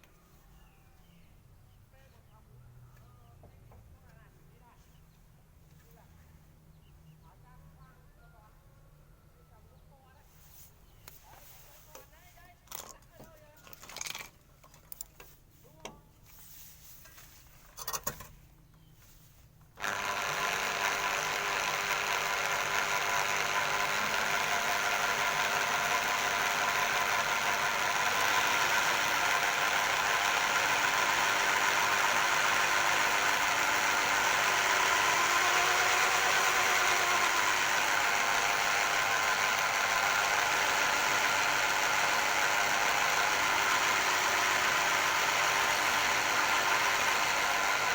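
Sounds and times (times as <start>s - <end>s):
generator motor humming: 19.7s - 47.9s.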